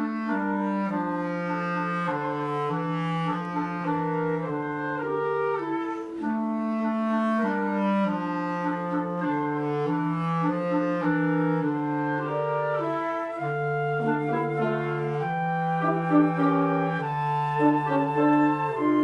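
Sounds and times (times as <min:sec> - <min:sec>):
wind band playing slow chords: 0:11.0 - 0:19.0.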